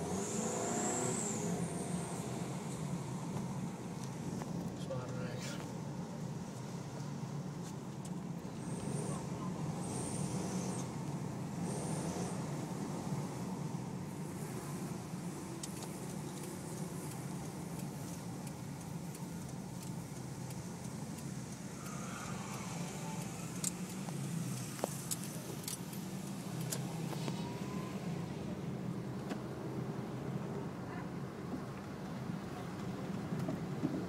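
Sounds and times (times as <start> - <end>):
sharp ticks: 15.5 - 26.8.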